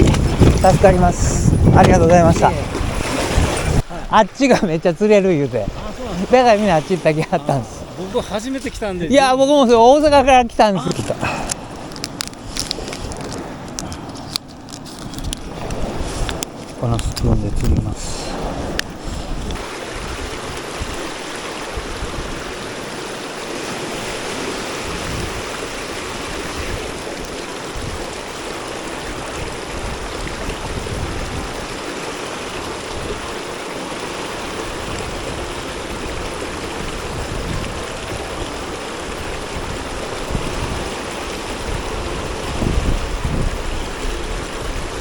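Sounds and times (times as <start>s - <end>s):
wind rumble on microphone: 0.0s - 4.2s, 7.6s - 45.0s
rushing water: 0.0s - 45.0s.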